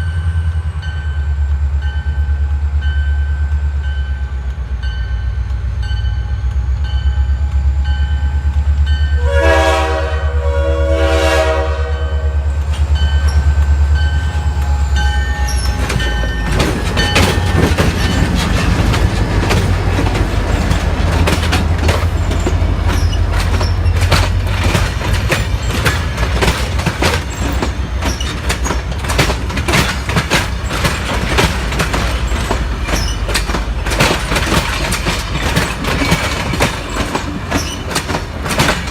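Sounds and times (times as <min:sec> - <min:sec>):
train horn blasts: 0:09.1 - 0:12.6
wheels clattering over rail joints: 0:12.6 - 0:38.9.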